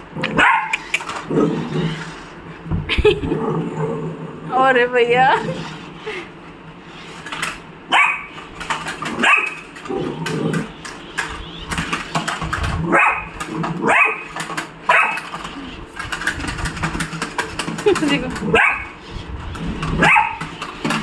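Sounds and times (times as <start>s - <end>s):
dog barking: 0.3s - 0.8s, 7.9s - 8.3s, 9.2s - 9.6s, 12.9s - 14.3s, 14.9s - 15.2s, 18.5s - 18.9s, 20.0s - 20.4s.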